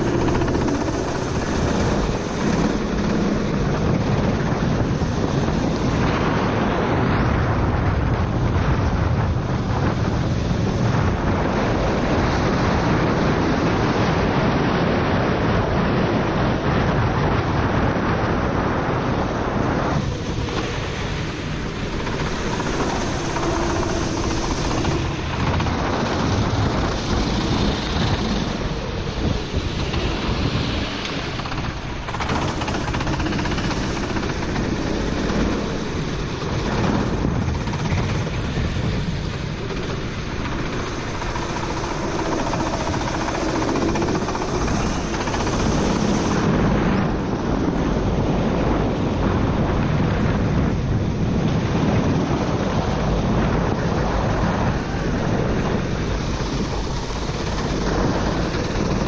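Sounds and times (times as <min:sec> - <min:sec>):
wind noise: 0:00.0 - 0:59.0
tyres rushing on wet track: 0:18.8 - 0:49.3.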